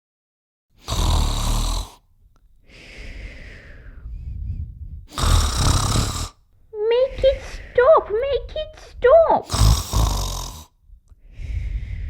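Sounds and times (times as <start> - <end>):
loud rasping snore: 0.8 - 2.0, 5.1 - 6.4, 9.4 - 10.8
soft breathy exhale: 11.2 - 12.0.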